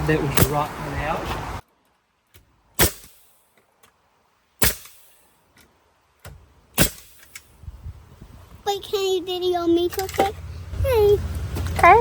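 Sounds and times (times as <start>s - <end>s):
hammer striking nails into wood: 2.8s - 3.2s, 4.6s - 5.0s, 6.2s - 7.4s.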